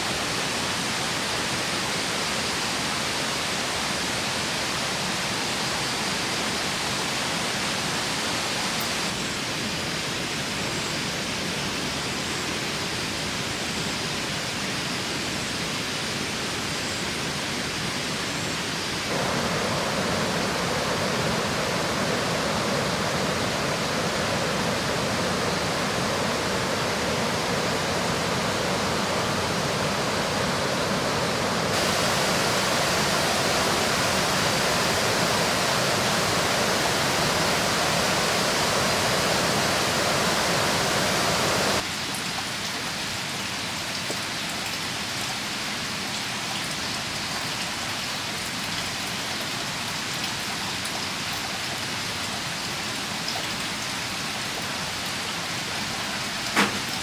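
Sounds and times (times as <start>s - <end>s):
rushing water: 0.0s - 57.0s.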